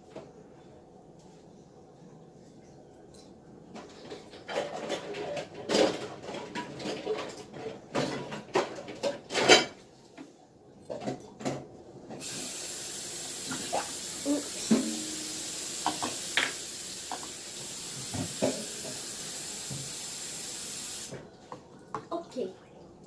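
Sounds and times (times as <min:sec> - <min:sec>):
steady hiss: 0:12.2 - 0:21.2.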